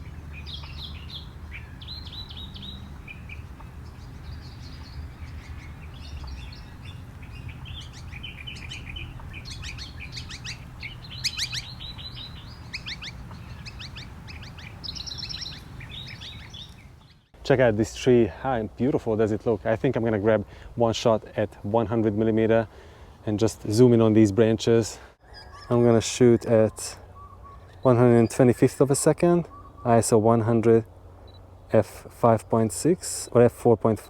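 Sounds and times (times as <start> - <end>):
birds chirping and whistling: 0.0 - 17.3, 25.2 - 28.4, 29.5 - 30.0.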